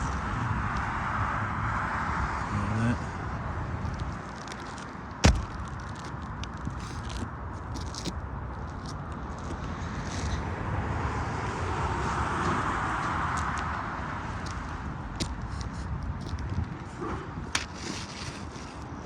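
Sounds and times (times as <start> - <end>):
outdoor background noise: 0.0 - 19.0
roof shingles scraping and crackling: 3.8 - 10.4, 17.6 - 19.0
sharp knock: 5.2 - 5.6.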